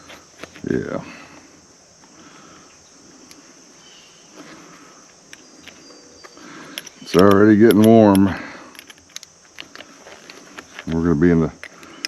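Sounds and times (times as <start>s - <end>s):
insects chorus: 0.0s - 12.0s.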